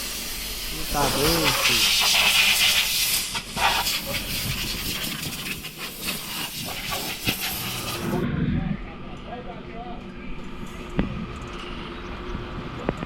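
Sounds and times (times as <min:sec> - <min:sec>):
vacuum cleaner running: 0:00.0 - 0:02.8, 0:03.9 - 0:08.3.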